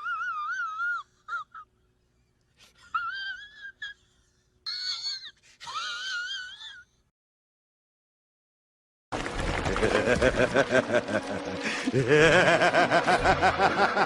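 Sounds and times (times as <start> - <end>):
high-pitched wheezy laugh: 2.6 - 7.0.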